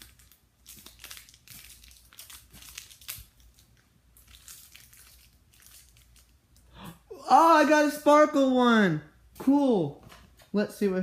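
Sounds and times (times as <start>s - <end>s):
plastic packaging crinkling: 0.0s - 6.7s.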